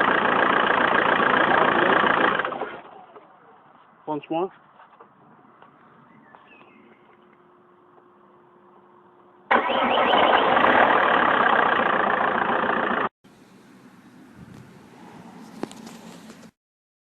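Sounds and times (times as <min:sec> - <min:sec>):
diesel engine running: 0:00.0 - 0:03.2, 0:07.4 - 0:16.5
starter motor cranking: 0:09.5 - 0:13.1.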